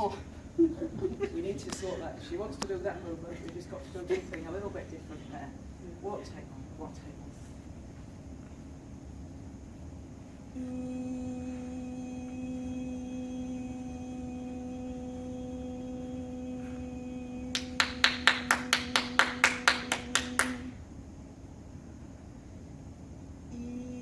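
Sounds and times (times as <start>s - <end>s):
steady held hummed tone: 0.0s - 24.0s
hand claps: 17.5s - 20.7s.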